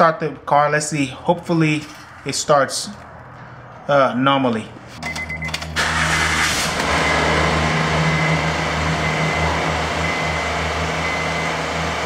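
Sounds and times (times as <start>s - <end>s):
car engine starting and idling: 4.8s - 12.0s.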